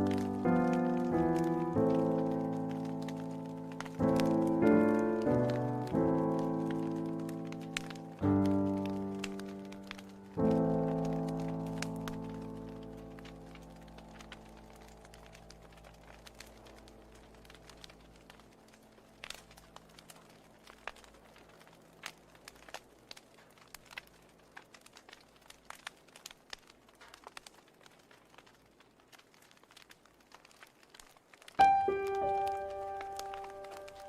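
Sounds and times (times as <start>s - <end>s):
music: 0.0s - 18.0s, 31.6s - 34.0s
wood fire crackling: 0.0s - 34.0s.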